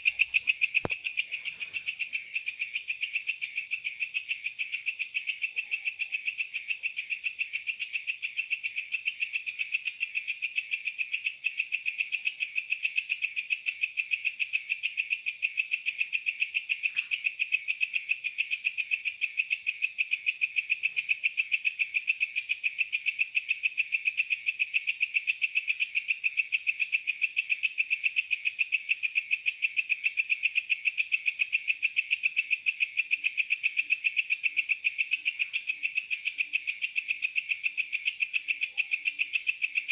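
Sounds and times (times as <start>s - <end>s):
insect trilling: 0.0s - 6.4s.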